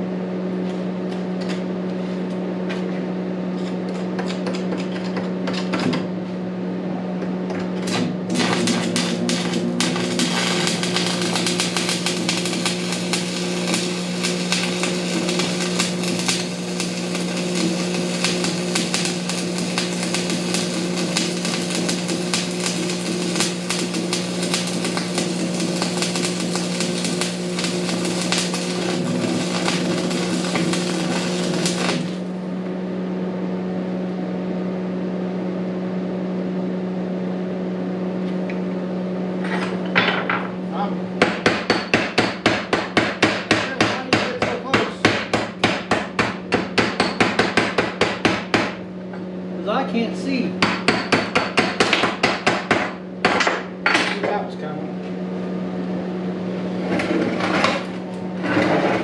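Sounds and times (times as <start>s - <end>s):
welder hum: 5.2s - 33.2s, 55.3s - 59.0s
welding arc crackling: 7.8s - 32.5s.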